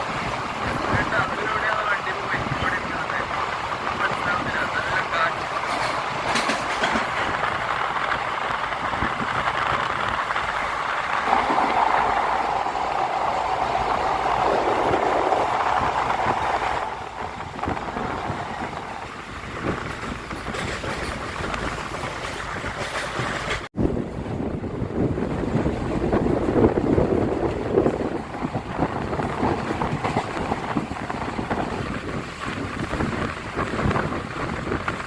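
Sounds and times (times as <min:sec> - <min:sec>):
train wheels on track: 0:00.0 - 0:35.0.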